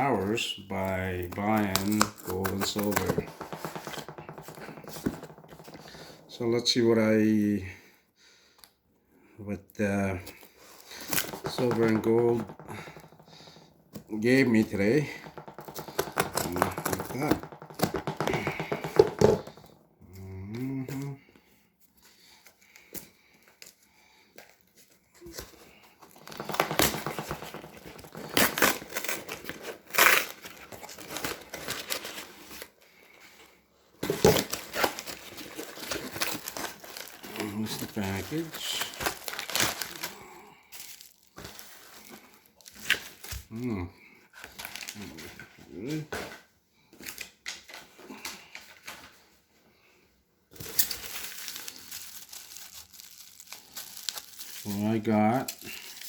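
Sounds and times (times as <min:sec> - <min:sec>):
packing material crinkling: 0:00.3 - 0:06.4, 0:10.6 - 0:19.8, 0:24.6 - 0:32.8, 0:34.0 - 0:43.5, 0:50.5 - 0:56.0.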